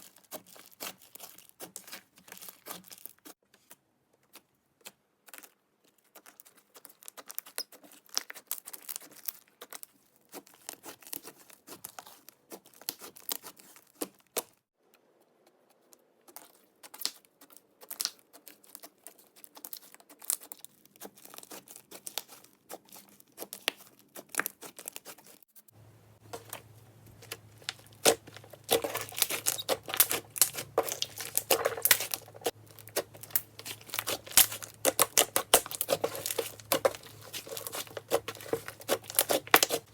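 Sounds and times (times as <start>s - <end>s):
slime squished by hand: 26.4s - 39.9s.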